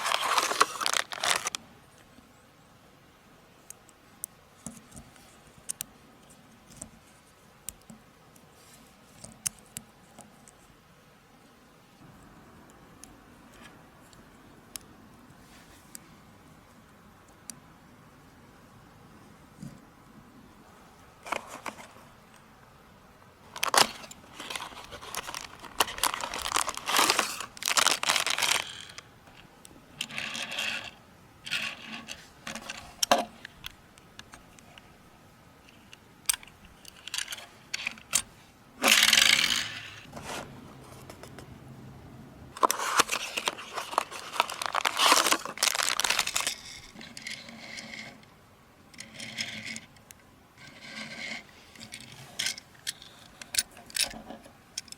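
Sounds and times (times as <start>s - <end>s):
packaging crinkling and tearing: 0.0s - 1.6s, 23.5s - 29.0s, 42.6s - 46.9s.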